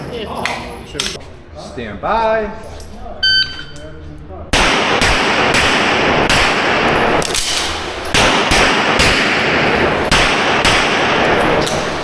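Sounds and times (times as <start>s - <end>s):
pistol shots with reverberation: 4.5s - 12.0s.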